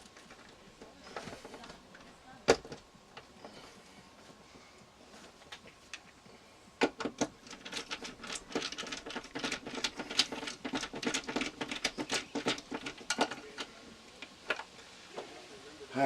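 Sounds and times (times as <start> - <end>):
tools light clicks and rattles: 6.9 - 14.7.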